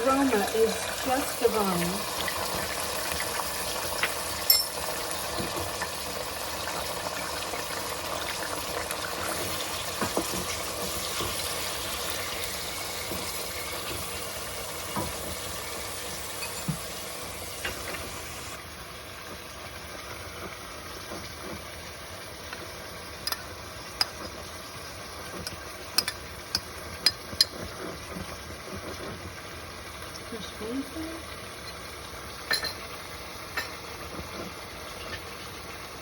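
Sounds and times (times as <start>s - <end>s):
garlic sizzling in oil: 0.0s - 36.0s.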